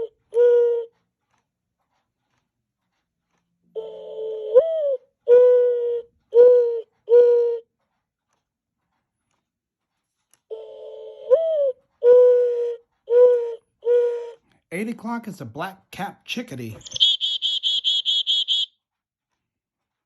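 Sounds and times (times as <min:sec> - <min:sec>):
clock playing dove cooing: 0:00.0 - 0:01.1, 0:03.7 - 0:07.8, 0:10.5 - 0:14.4, 0:16.8 - 0:18.7.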